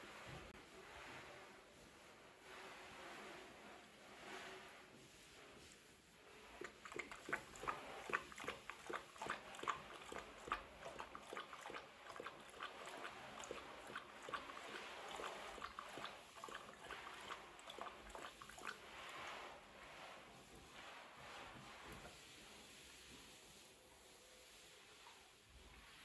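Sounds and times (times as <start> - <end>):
dog chewing: 6.6 - 18.8.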